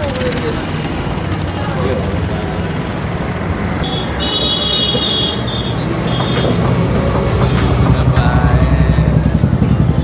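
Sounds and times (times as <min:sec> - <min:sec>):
vehicle engines running: 0:00.0 - 0:10.0.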